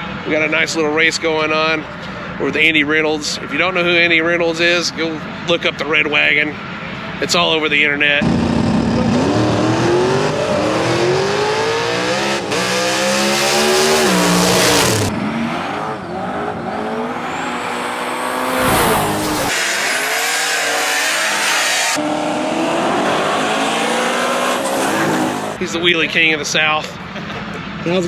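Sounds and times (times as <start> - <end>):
drag cars accelerating hard: 8.2 - 25.6.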